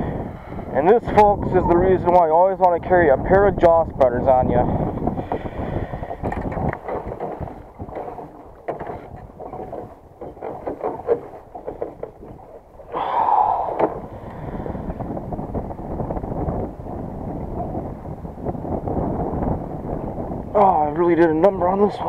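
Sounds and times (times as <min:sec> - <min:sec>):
wind buffeting microphone: 0:00.0 - 0:22.0
small knocks and clicks: 0:06.2 - 0:12.3.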